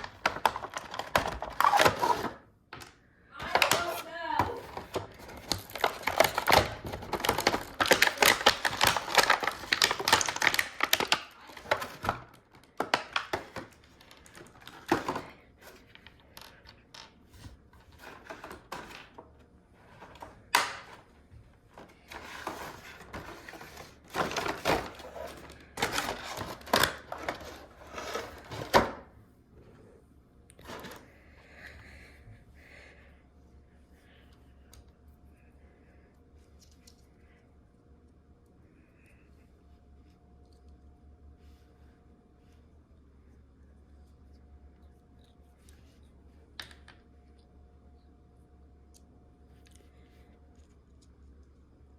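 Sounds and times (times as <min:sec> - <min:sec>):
plastic toys clicking and rustling: 0:00.0 - 0:17.2, 0:21.8 - 0:28.8.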